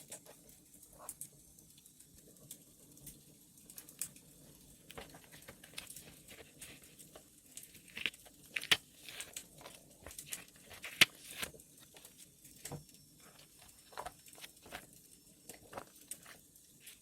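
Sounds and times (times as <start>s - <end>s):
wood fire crackling: 0.0s - 17.0s
paper crinkling: 4.7s - 17.0s.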